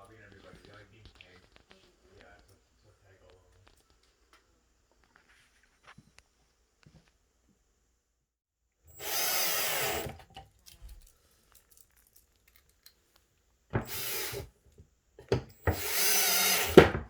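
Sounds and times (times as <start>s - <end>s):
power drill running: 8.9s - 10.4s, 13.8s - 14.5s, 15.2s - 17.0s.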